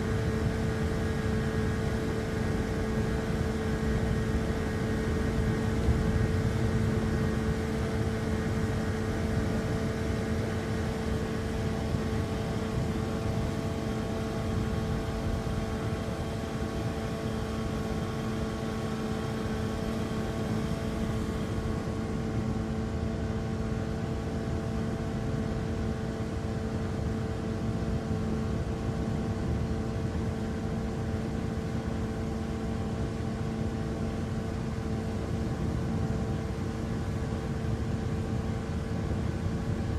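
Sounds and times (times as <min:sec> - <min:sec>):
boat engine humming: 0:00.0 - 0:24.7.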